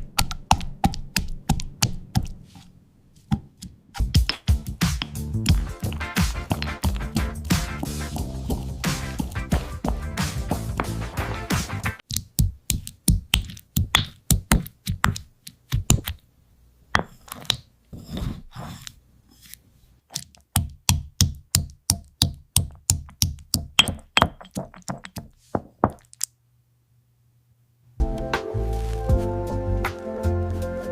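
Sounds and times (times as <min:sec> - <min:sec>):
candy crunching: 0:05.2 - 0:11.4.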